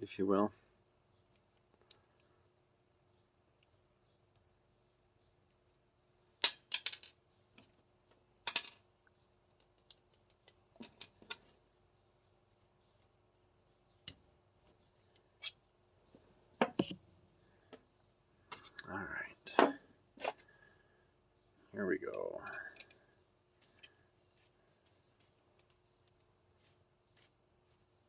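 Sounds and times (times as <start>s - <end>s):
clicks and clatter of parts: 6.4s - 7.8s, 8.4s - 11.6s, 22.1s - 23.0s.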